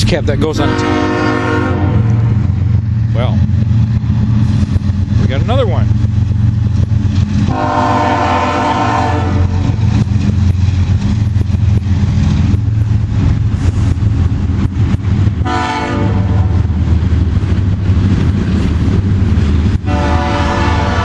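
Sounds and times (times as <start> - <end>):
locomotive engine drone: 0.0 - 21.0
train horn blast: 0.5 - 2.4, 7.5 - 9.6, 15.4 - 16.7, 19.8 - 21.0.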